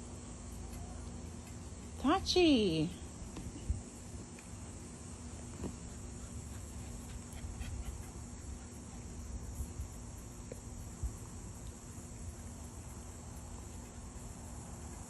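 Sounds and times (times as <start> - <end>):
low steady hum: 0.0 - 15.0
high-pitched hiss or chirring: 3.5 - 15.0.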